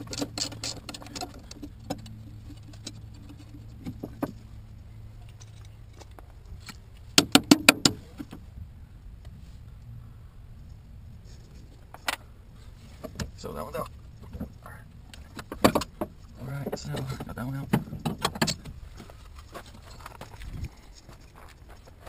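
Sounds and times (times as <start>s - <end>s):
metal tools clinking against bolts: 0.0s - 3.6s.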